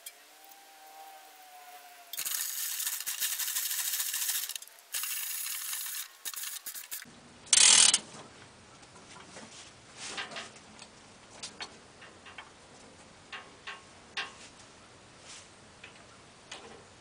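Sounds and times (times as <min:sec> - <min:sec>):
chain hoist ratchet clicking: 0:02.1 - 0:08.0
loud chain rattle: 0:02.2 - 0:07.0.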